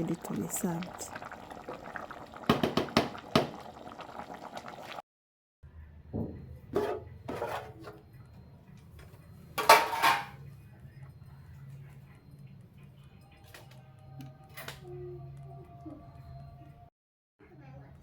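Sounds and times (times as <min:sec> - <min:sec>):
stew boiling in pot: 0:00.0 - 0:05.0.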